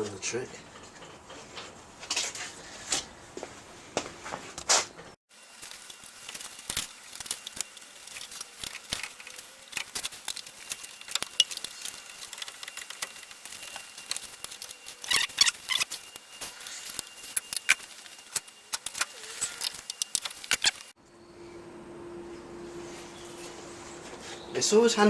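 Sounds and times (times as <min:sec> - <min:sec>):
metal tools clicking and rattling: 0:05.4 - 0:21.0.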